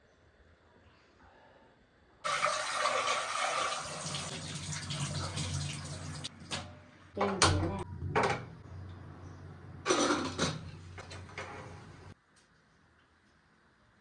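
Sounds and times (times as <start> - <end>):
tap water running into sink: 2.3 - 6.7, 8.1 - 12.2.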